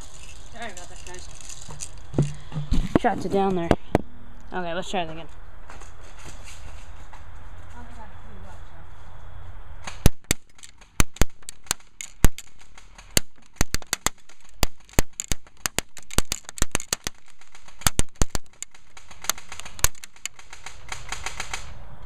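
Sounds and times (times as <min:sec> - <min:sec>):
rapid clicks: 0:09.8 - 0:21.7
airsoft gun firing bursts: 0:09.9 - 0:21.8.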